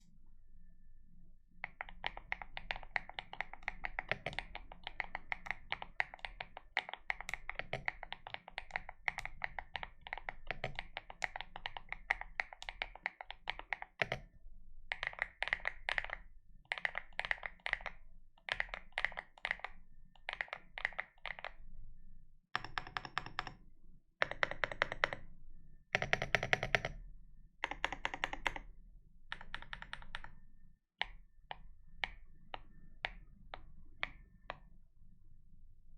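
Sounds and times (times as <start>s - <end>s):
mechanical keyboard typing: 1.6s - 14.2s, 14.9s - 21.5s, 22.6s - 23.6s, 24.2s - 25.2s, 26.0s - 27.0s, 27.6s - 28.6s, 29.3s - 30.4s.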